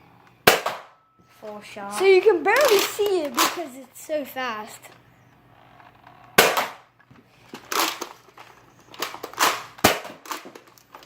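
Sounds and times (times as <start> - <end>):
toy dart blaster firing: 0.4 - 1.0, 6.3 - 6.9, 9.0 - 10.6.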